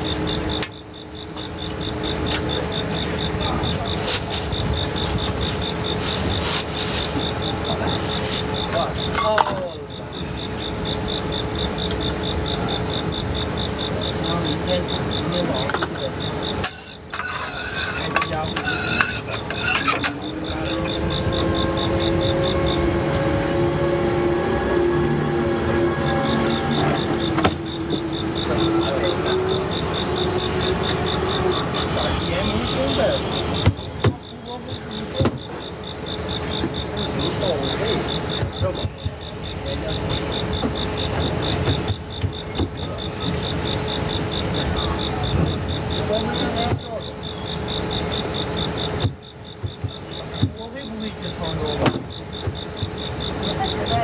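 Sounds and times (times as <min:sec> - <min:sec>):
cricket chirping: 0:00.0 - 0:54.0
steady hum: 0:00.0 - 0:54.0
rapid high electronic beeping: 0:07.2 - 0:17.1
metal utensils scraping cookware: 0:15.7 - 0:21.0.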